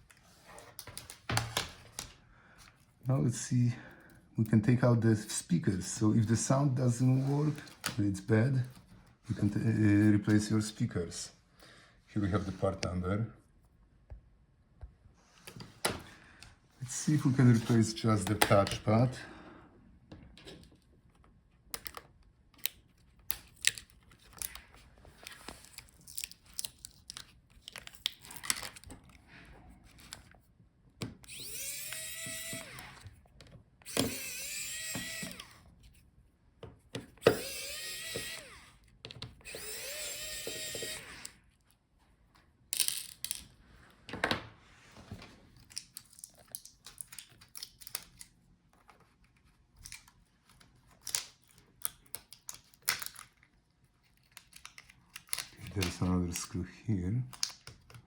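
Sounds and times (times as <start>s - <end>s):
electric screwdriver whining: 31.2s - 33.2s, 33.8s - 35.7s, 37.2s - 41.4s
small parts and tools clicking: 31.2s - 35.7s, 36.9s - 41.4s, 42.7s - 43.6s.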